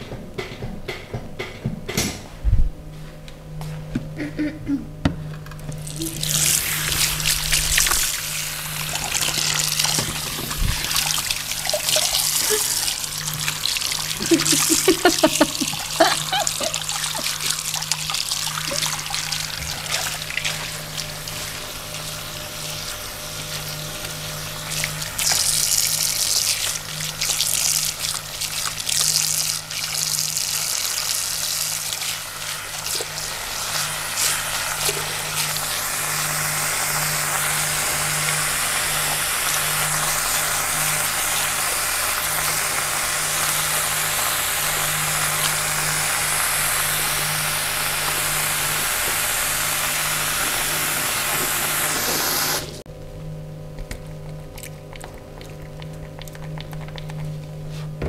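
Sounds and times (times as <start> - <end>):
water running from a tap: 5.7 - 52.8.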